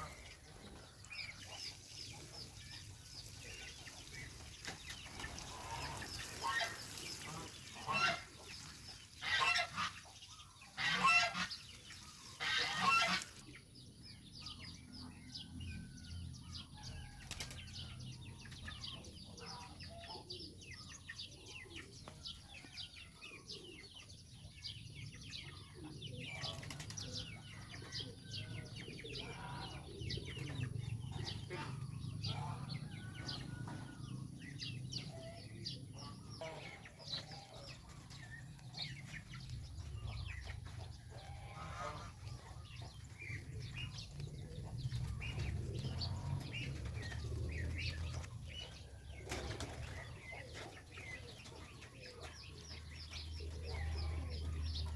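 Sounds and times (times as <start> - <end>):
goslings peeping: 0.0 - 13.5, 29.0 - 54.9
grass rustling: 10.8 - 13.4.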